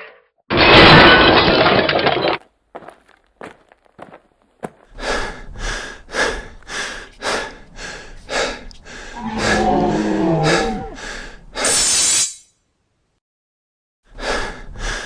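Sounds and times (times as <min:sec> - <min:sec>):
rapid panting breaths: 0:04.6 - 0:09.5, 0:11.0 - 0:11.5
person groaning: 0:09.2 - 0:11.1.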